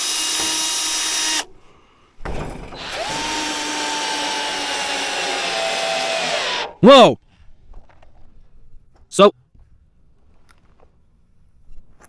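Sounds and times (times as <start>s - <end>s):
power drill motor whining: 0.0s - 1.6s, 2.8s - 6.8s.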